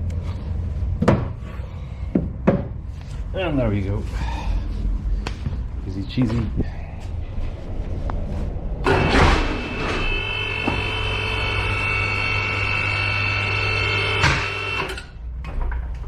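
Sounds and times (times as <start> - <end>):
knock: 2.1 - 2.7
electric motor whining: 8.9 - 15.0.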